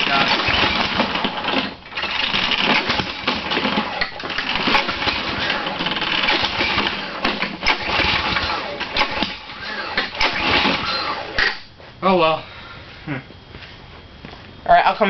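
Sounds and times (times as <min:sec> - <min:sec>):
lawn mower engine sputtering: 0:00.0 - 0:11.7.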